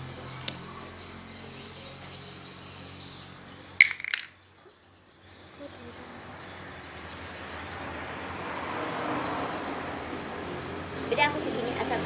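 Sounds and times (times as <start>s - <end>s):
small objects clinking: 3.8s - 4.4s.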